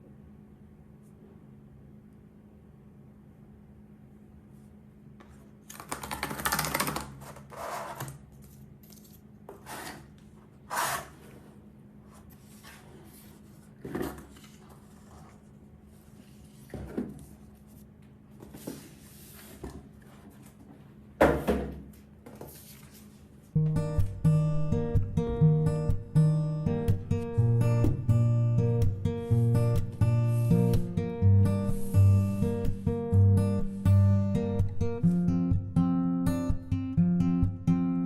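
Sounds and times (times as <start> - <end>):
cardboard packaging rustling and scraping: 7.2 - 20.8.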